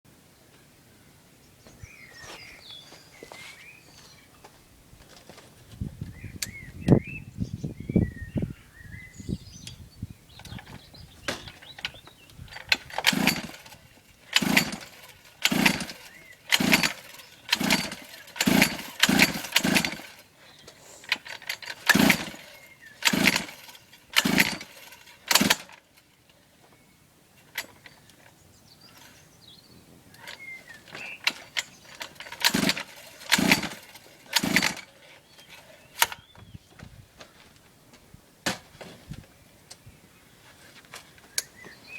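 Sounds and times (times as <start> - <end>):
small engine recoil pulls: 10.4 - 26.5, 27.4 - 29.3, 30.1 - 36.3.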